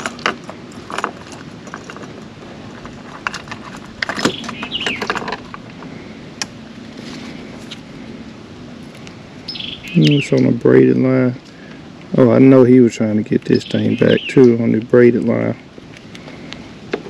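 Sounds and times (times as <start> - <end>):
hooks and line rattling: 0.0 - 7.9
branches rustling: 0.0 - 10.6.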